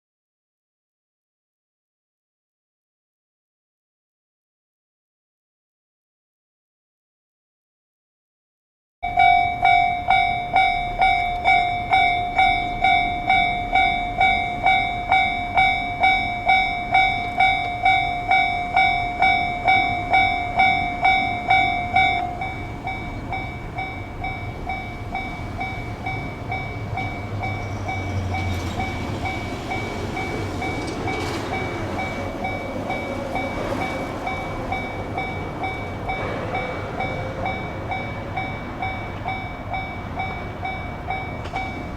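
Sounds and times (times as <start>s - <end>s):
diesel train rumbling past: 9.0s - 41.9s
level-crossing alarm ringing: 9.0s - 41.9s.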